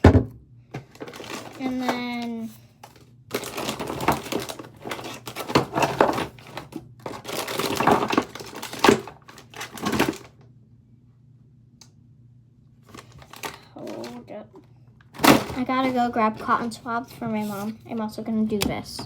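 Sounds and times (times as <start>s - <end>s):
packaging crinkling and rustling: 0.8s - 10.4s, 12.8s - 14.2s, 15.0s - 17.8s.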